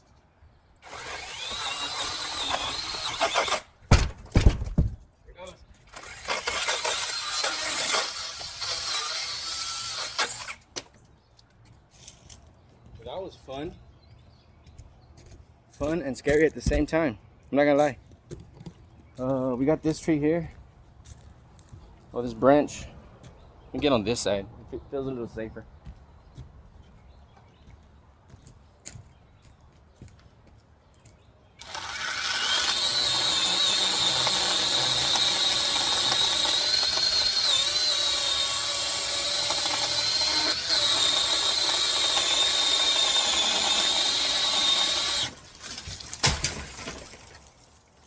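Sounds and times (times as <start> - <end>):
power saw cutting branch: 0.8 - 4.6, 5.9 - 10.8, 31.6 - 47.6
branch falling knocks: 45.5 - 47.6.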